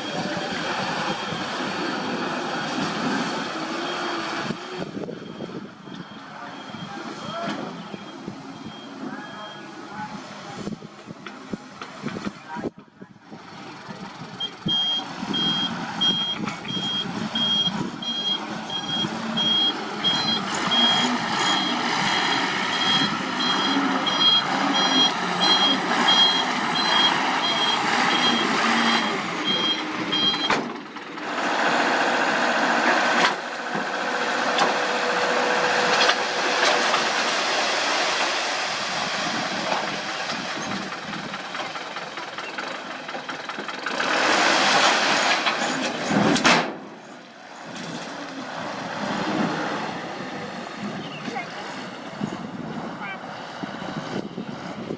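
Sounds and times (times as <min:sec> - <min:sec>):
vehicle reversing alarm beeping: 0:00.0 - 0:09.9, 0:14.4 - 0:30.7
diesel engine running: 0:00.0 - 0:54.9.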